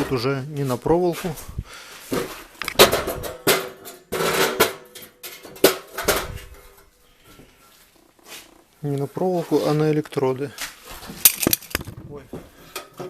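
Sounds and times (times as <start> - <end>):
sharp knocks and metallic clatters: 2.1 - 7.0, 10.9 - 13.0.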